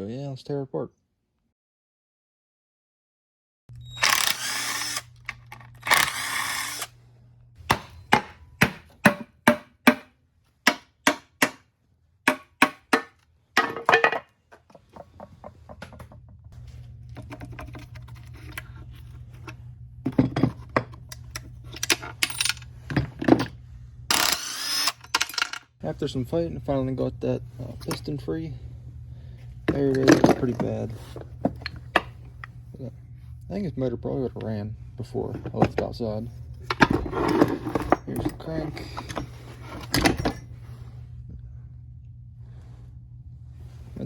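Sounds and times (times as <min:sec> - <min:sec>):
scraping and handling: 0:12.9 - 0:23.6, 0:29.2 - 0:33.4, 0:34.3 - 0:41.2.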